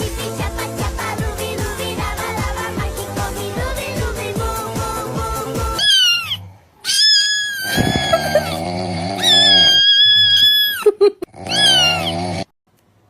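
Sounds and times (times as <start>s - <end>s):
high-pitched wavering cat-like cries: 5.8s - 8.6s, 9.2s - 12.3s.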